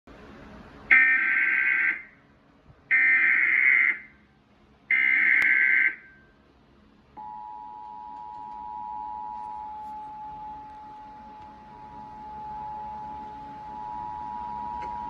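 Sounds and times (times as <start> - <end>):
two-tone attention signal: 7.2 - 15.0.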